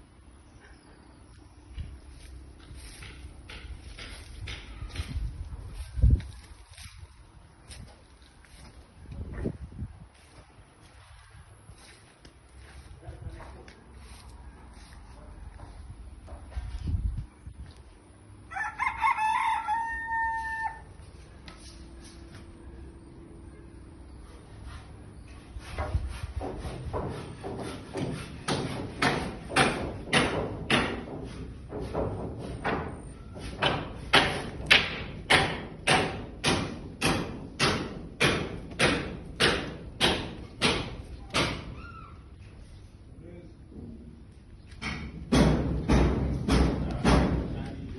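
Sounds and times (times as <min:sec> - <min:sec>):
rooster crowing: 0:18.4 - 0:21.0
hand tool striking hard: 0:25.8 - 0:41.7, 0:44.8 - 0:47.5.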